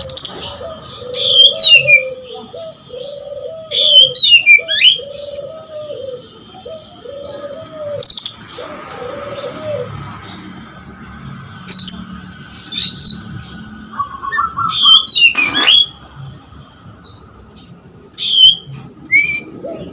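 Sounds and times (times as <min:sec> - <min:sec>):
bird singing high whistles: 0:18.3 - 0:19.6.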